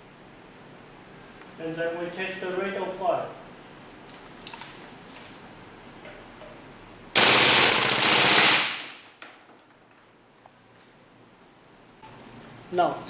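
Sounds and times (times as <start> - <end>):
airsoft rifle full-auto burst: 7.2 - 9.0.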